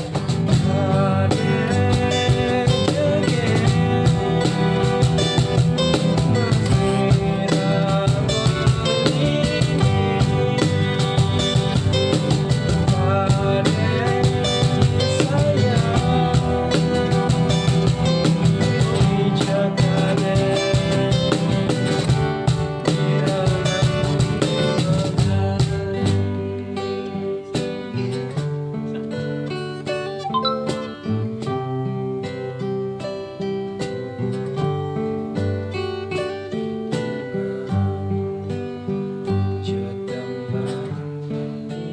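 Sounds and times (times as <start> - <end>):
band playing guitar and drums: 0.0 - 31.6.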